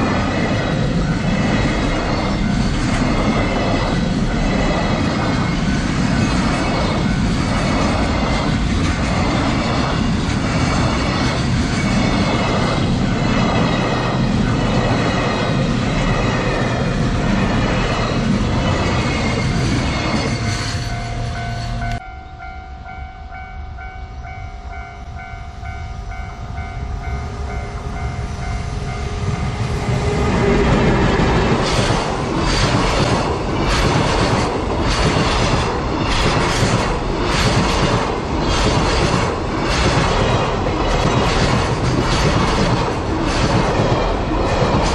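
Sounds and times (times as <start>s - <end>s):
level crossing warning bell: 5.6s - 8.0s, 19.4s - 30.1s
train wheels clattering over rail joints: 30.9s - 44.9s.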